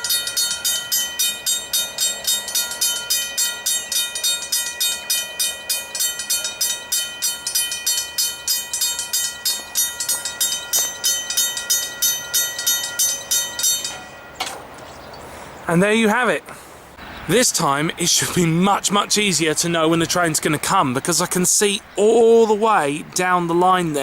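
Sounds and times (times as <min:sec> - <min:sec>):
level-crossing bell ringing: 0:00.0 - 0:14.6.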